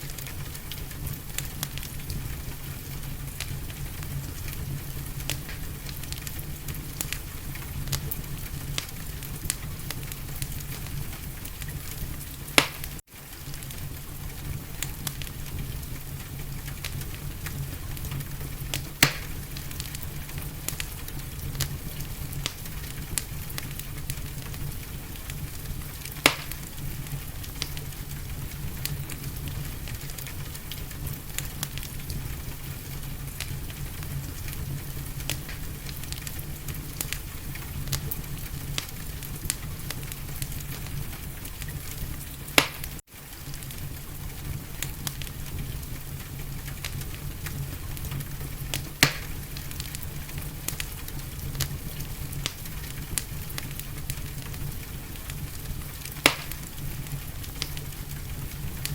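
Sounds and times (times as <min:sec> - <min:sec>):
rain hiss: 0:00.0 - 0:58.9
wood fire crackling: 0:00.0 - 0:58.9.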